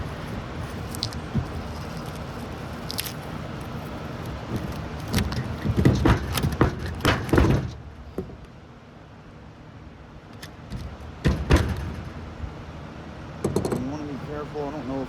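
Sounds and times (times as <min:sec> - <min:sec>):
metal knocking and scraping: 0:00.0 - 0:08.5, 0:10.4 - 0:12.5, 0:13.4 - 0:14.1.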